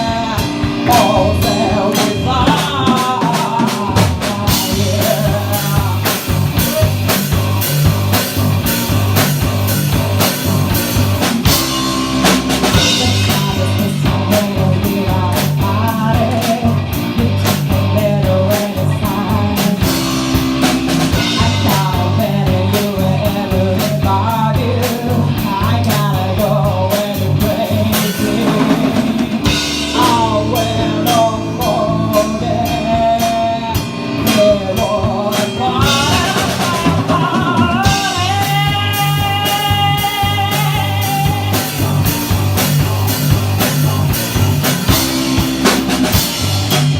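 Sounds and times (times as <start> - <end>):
rock blues band playing: 0.0 - 46.9.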